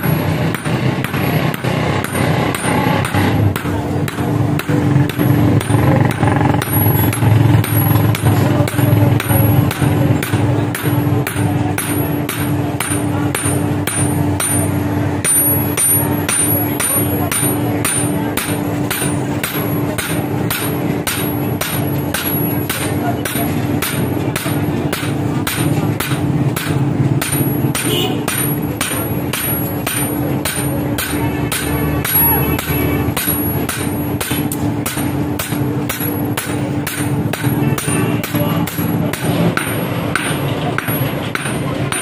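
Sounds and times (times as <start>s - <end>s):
hammer striking steel on anvil: 0.0s - 42.0s.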